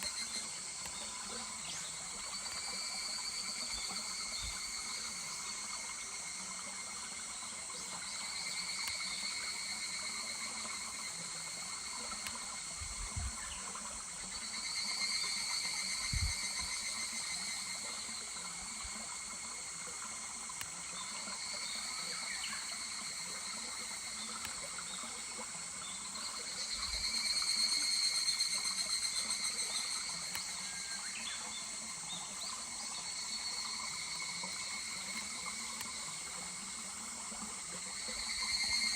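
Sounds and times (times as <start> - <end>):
cicadas calling: 0.0 - 38.9
small stream rushing: 0.0 - 38.9.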